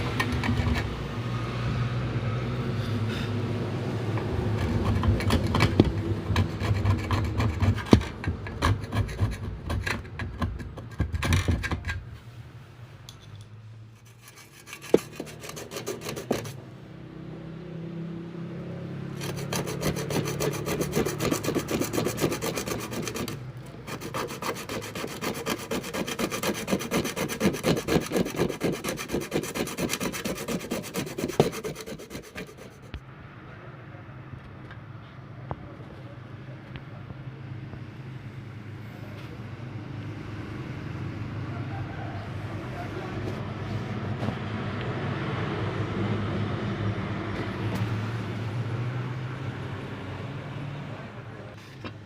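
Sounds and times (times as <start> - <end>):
abrasive rasping on hard surface: 0.0 - 1.0, 4.1 - 12.1, 13.9 - 16.6, 19.2 - 33.0.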